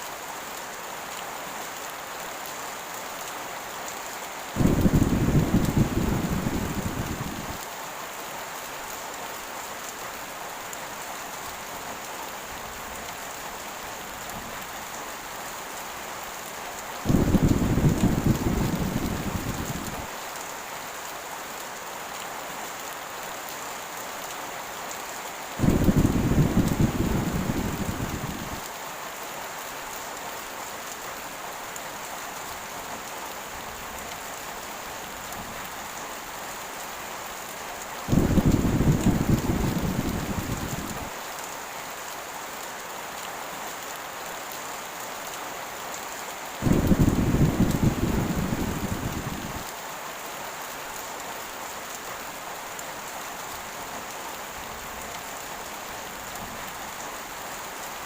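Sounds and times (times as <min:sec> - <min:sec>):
heavy rain: 0:00.0 - 0:58.0
thunder rumbling: 0:04.6 - 0:07.6, 0:17.1 - 0:20.1, 0:25.6 - 0:28.6, 0:38.1 - 0:41.1, 0:46.6 - 0:49.6.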